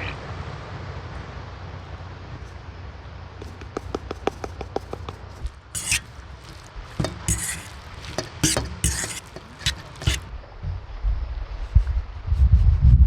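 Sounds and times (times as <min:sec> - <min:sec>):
utensil scraping in a bowl: 0:03.4 - 0:10.3.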